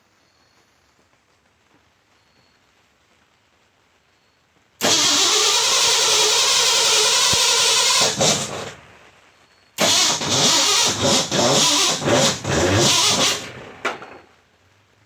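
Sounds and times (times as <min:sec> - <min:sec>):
engine starter cranking: 0:04.8 - 0:08.9, 0:09.8 - 0:14.2.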